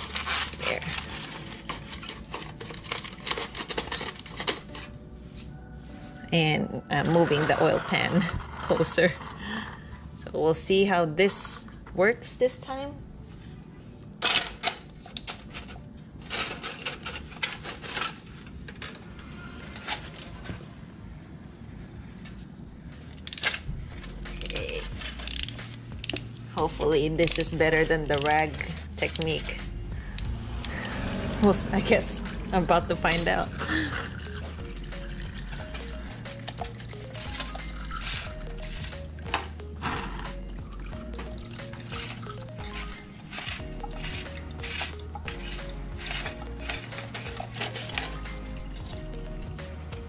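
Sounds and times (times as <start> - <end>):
crinkling and clicking of tools: 0.0 - 5.5, 14.2 - 20.6, 22.2 - 31.0, 32.2 - 50.0
background music with bass line: 23.7 - 50.0.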